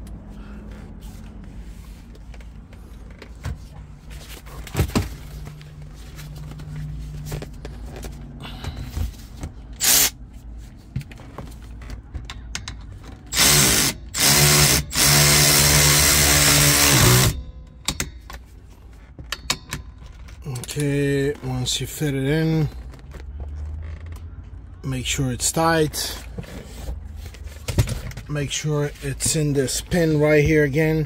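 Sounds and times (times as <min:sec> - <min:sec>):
power drill running: 0:09.8 - 0:10.1, 0:13.3 - 0:17.4.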